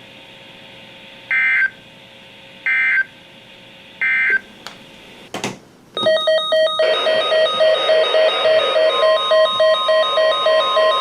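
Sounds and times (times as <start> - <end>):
digital data tone bursts: 6.1 - 11.0
rapidly alternating electronic tones: 6.4 - 11.0.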